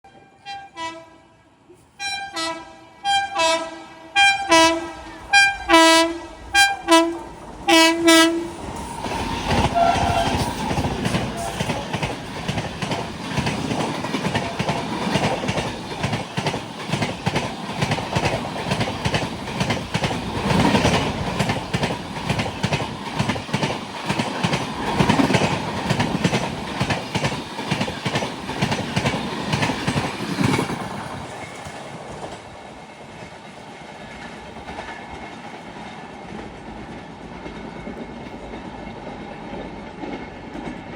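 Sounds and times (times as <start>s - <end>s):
locomotive air horn blasts: 0.1s - 1.4s, 2.0s - 8.6s, 9.7s - 10.6s
train passing rush: 0.1s - 40.9s.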